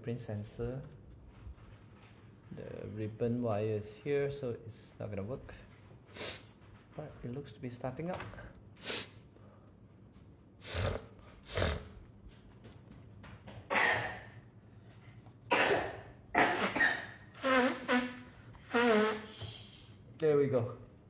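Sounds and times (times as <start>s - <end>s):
person coughing: 13.7s - 14.4s, 15.5s - 19.5s.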